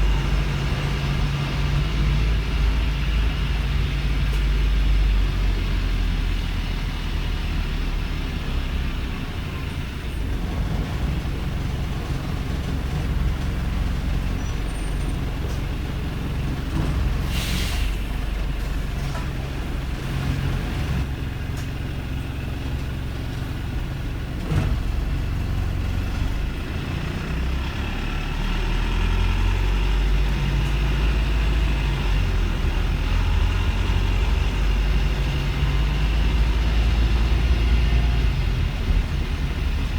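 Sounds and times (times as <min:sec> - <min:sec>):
air hiss: 0:17.3 - 0:18.0.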